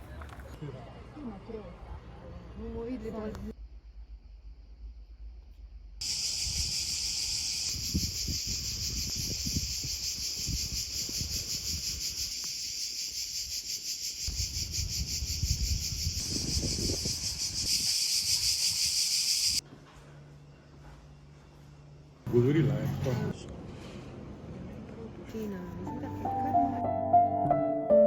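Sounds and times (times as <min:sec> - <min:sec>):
cicadas buzzing: 0:06.0 - 0:19.6.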